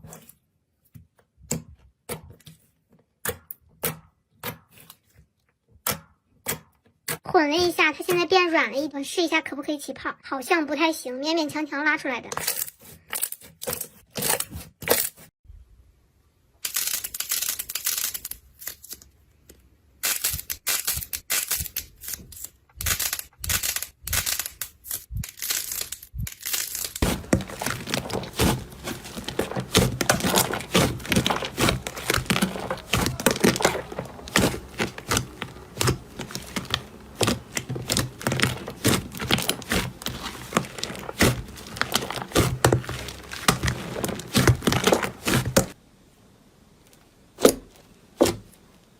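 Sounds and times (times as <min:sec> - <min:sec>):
slime crackling and popping: 0:22.8 - 0:45.8.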